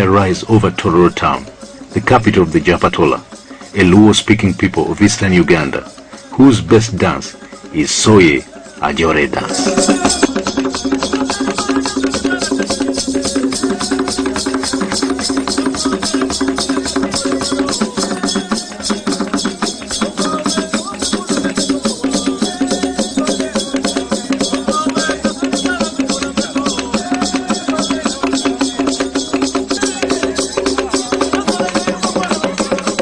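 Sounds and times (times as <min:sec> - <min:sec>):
drums and rattling percussion: 0:00.0 - 0:33.0
voices singing: 0:00.0 - 0:33.0.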